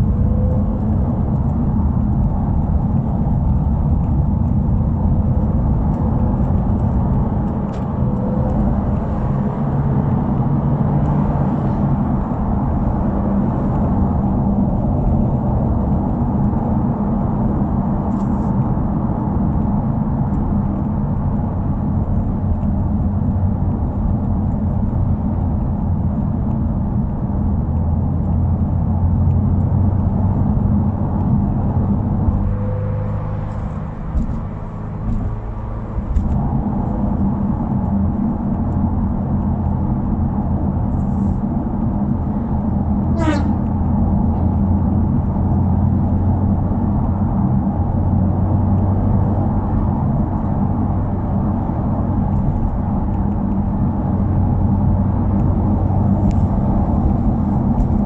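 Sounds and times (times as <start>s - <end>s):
car engine and exhaust rumble: 0.0s - 58.0s
road noise: 0.0s - 58.0s.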